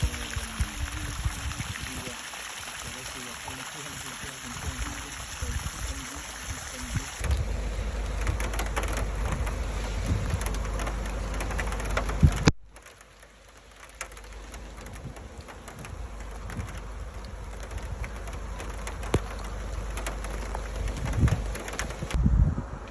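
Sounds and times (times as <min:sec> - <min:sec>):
rain falling: 0:00.0 - 0:22.2
low rumble: 0:04.6 - 0:22.9.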